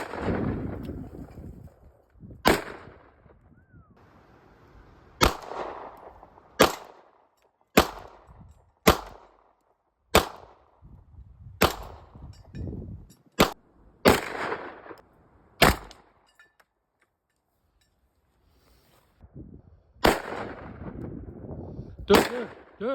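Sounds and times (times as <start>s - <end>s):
gunshots with echo: 0.0s - 0.8s, 2.4s - 3.2s, 5.2s - 7.1s, 7.8s - 9.4s, 13.4s - 15.0s, 22.1s - 22.9s.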